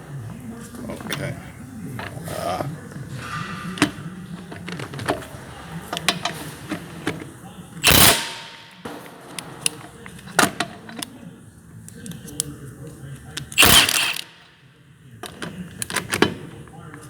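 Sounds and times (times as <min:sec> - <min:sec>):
tool handling clicks and knocks: 0:00.7 - 0:11.2, 0:11.9 - 0:14.6, 0:15.2 - 0:17.0
impact wrench hammering: 0:07.8 - 0:09.7, 0:13.5 - 0:14.5.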